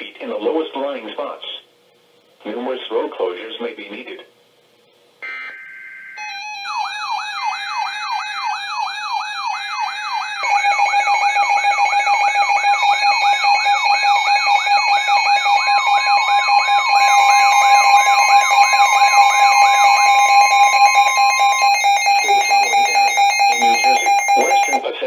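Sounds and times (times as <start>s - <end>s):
whooping alert siren: 5.2s - 24.9s
steady alarm tones: 5.2s - 25.0s.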